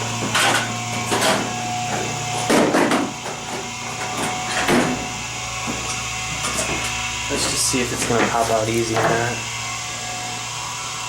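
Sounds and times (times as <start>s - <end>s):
steady low hum: 0.0s - 11.0s
metal knocks and clanks on chain: 0.2s - 5.1s.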